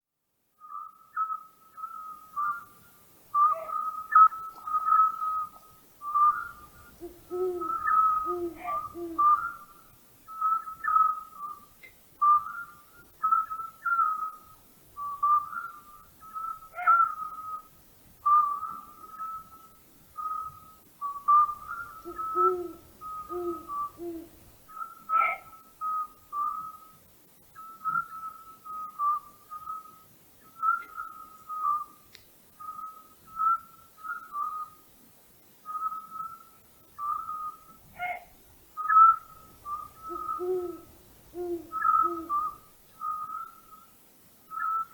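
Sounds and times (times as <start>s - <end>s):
owl whistled notes: 0.6s - 2.7s, 3.4s - 17.7s, 18.3s - 26.9s, 27.6s - 32.0s, 32.6s - 34.8s, 35.6s - 38.2s, 38.8s - 43.9s, 44.5s - 44.9s
owl deep hoots: 6.2s - 11.4s, 16.4s - 17.6s, 21.3s - 25.6s, 37.0s - 43.8s.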